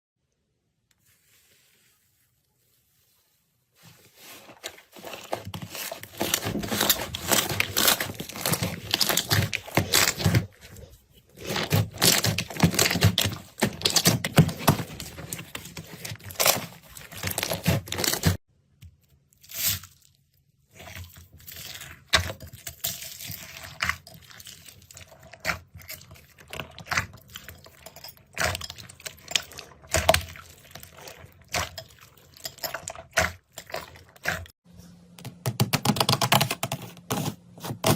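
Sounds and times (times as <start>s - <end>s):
slime crackling and popping: 6.1s - 10.5s.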